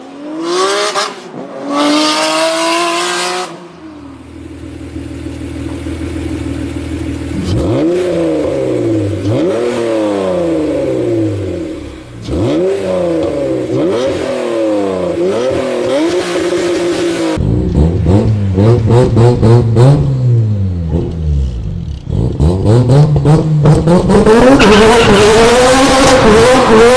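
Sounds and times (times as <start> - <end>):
car engines revving: 0.0 - 26.9
engine idling: 4.0 - 9.4
exhaust pops: 4.2 - 9.6.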